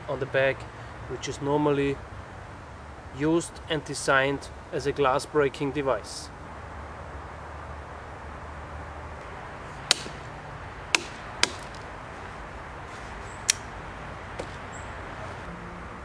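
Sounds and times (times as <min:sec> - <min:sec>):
knife spike knocking walnut shell: 0:09.9 - 0:10.2, 0:11.0 - 0:11.8.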